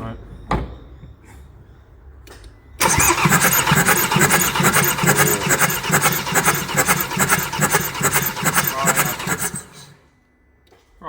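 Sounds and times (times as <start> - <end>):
diesel engine cranking on starter: 2.8 - 10.1.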